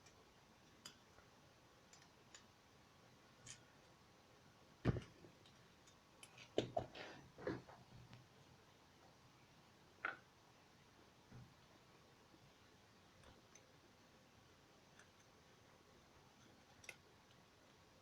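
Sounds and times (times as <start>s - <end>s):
small clicks and taps of parts: 0.0s - 2.6s, 3.3s - 4.0s, 4.8s - 6.9s, 14.8s - 15.4s, 16.2s - 17.9s.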